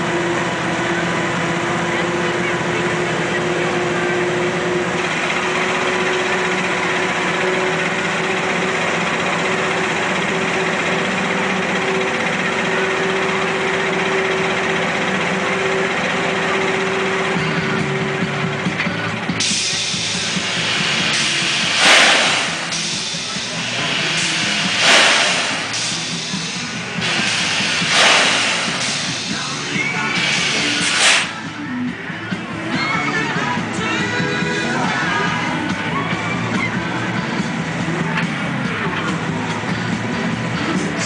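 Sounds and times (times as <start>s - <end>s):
carnival ride mechanical hum: 0.0s - 41.0s
fairground noise: 0.0s - 41.0s
loud hiss: 19.4s - 31.4s.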